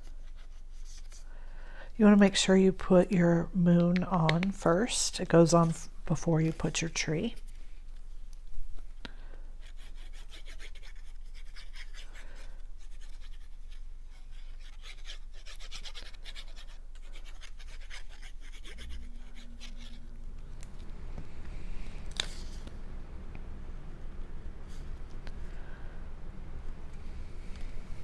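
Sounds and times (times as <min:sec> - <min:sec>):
paper being rubbed: 0:09.6 - 0:20.3
low hum: 0:18.0 - 0:28.0.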